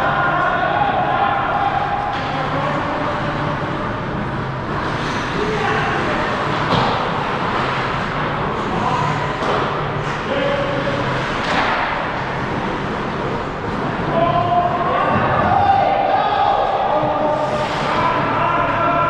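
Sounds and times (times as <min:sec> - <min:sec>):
players shouting: 0:00.0 - 0:03.8, 0:13.8 - 0:19.0
steady hum: 0:00.0 - 0:19.0
hockey sticks and puck knocking: 0:06.5 - 0:08.0, 0:11.2 - 0:12.2.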